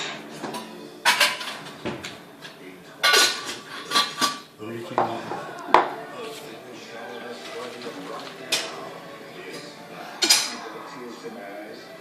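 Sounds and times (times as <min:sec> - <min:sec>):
plates and cutlery clattering: 0:00.0 - 0:06.0, 0:07.2 - 0:10.7.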